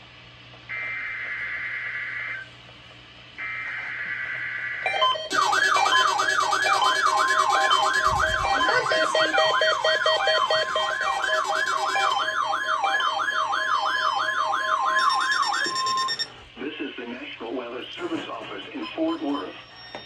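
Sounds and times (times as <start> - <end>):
steady warning alarm tone: 0.7 - 2.6, 3.4 - 20.0
siren-like warble: 3.4 - 16.4
fast beeping and chirping: 5.0 - 13.0, 14.9 - 16.3.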